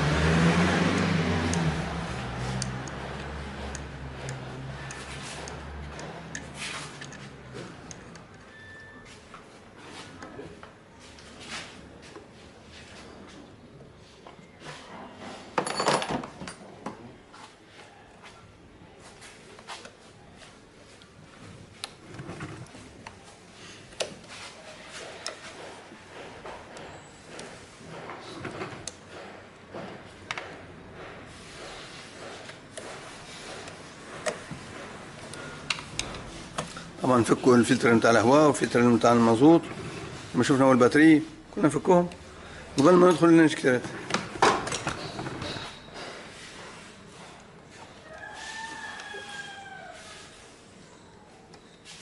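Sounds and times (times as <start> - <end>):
tools clicking and knocking: 0.9 - 8.5, 25.1 - 37.0, 42.8 - 46.2.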